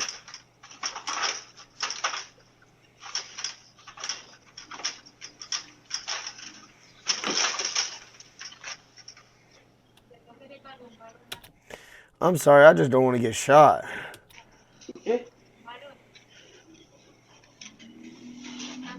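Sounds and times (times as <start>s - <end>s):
rustling and clattering of objects: 0.0s - 9.8s, 16.1s - 18.9s
steady low hum: 0.0s - 18.9s.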